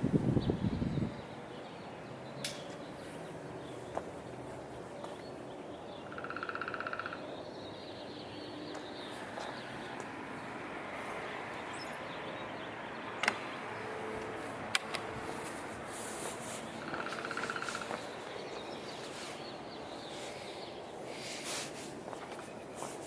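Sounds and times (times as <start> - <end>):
fan clicks: 2.4 - 2.8, 13.2 - 13.6, 14.7 - 15.1.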